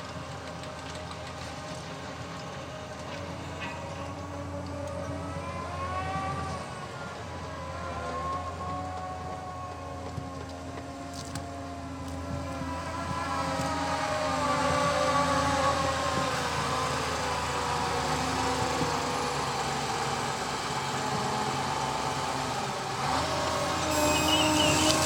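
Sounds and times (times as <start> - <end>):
harvester engine whining hum: 0.0 - 25.0.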